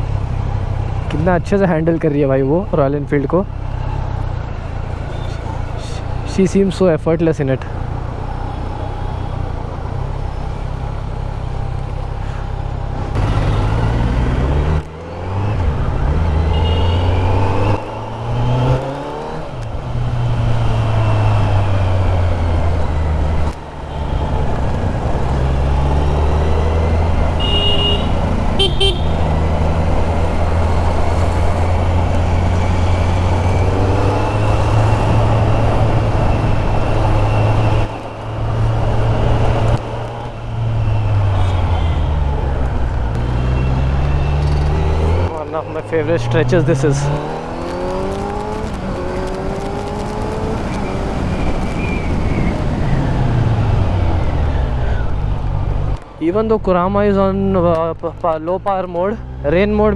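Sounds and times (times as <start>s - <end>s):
motorcycle engine revving: 13.1s - 56.0s
vehicle horn honking: 16.5s - 17.1s, 27.4s - 29.2s.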